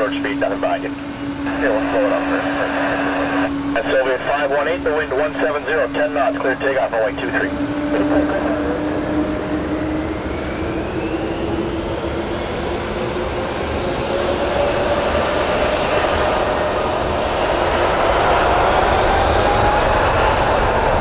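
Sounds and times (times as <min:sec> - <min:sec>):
jet engines running: 0:00.0 - 0:21.0.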